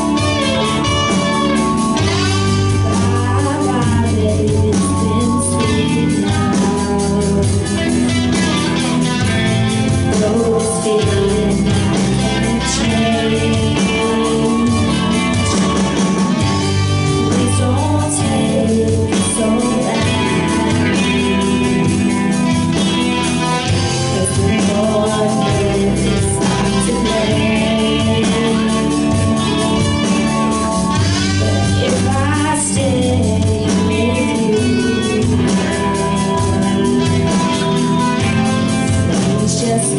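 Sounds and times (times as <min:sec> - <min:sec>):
electric guitar: 0:00.0 - 0:39.9
live rock band playing: 0:00.0 - 0:39.9
person singing: 0:00.0 - 0:39.9.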